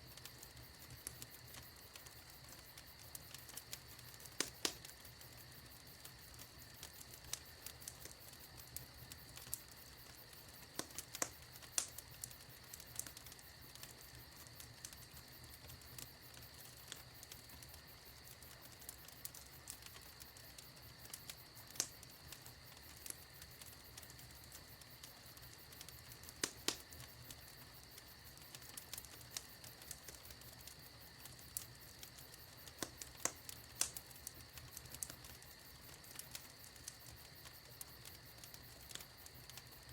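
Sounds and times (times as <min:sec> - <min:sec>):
faint steady hiss: 0:00.0 - 0:39.9
fire crackling: 0:00.0 - 0:39.9.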